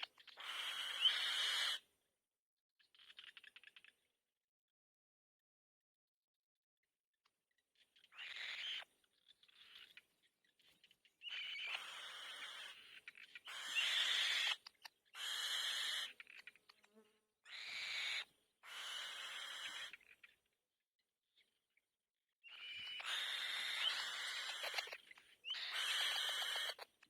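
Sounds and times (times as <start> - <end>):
young bird begging screeches: 0.4 - 1.8, 15.2 - 16.1, 22.6 - 24.9, 25.5 - 26.8.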